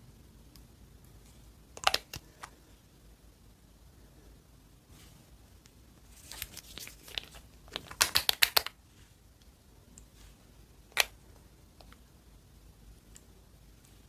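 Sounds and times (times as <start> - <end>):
sharp clicks and pops: 1.7 - 2.6, 5.6 - 8.8.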